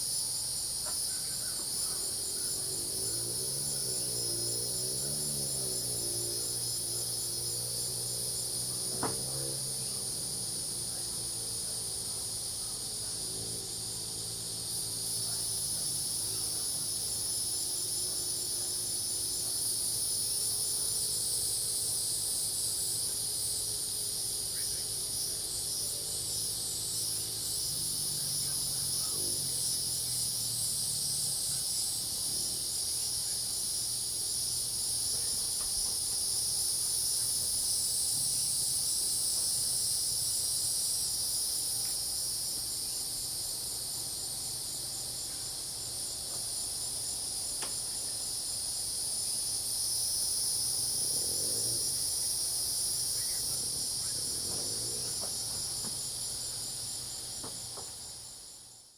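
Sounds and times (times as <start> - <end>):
crickets and cicadas chirping: 0.0 - 58.9
fast pulsing insect trill: 0.0 - 58.9
frogs calling: 50.8 - 57.9.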